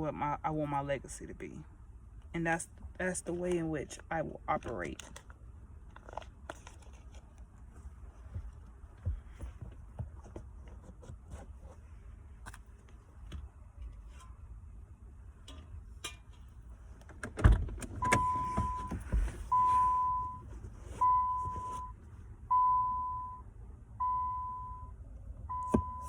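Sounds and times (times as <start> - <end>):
handling clicks and rustling: 2.7 - 14.5.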